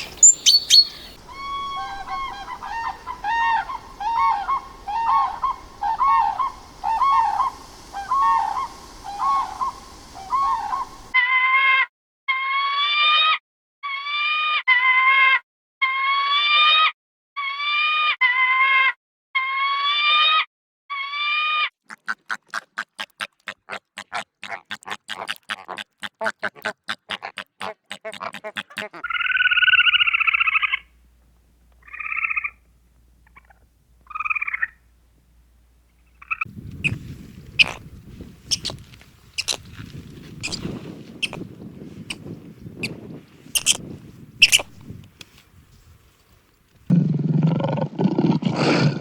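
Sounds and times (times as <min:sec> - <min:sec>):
brief animal calls: 0:00.0 - 0:11.2, 0:22.4 - 0:30.8
rapid pulsed animal calls: 0:00.0 - 0:11.2, 0:22.4 - 0:31.0, 0:31.8 - 0:34.9, 0:43.6 - 0:43.8
pitched animal call: 0:00.0 - 0:11.3, 0:22.0 - 0:30.8, 0:43.6 - 0:43.8.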